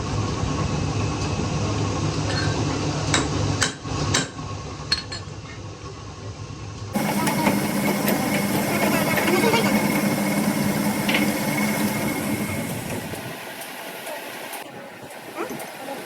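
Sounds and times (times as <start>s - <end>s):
low machine hum: 5.7s - 16.0s
loud steady machine noise: 6.9s - 16.0s.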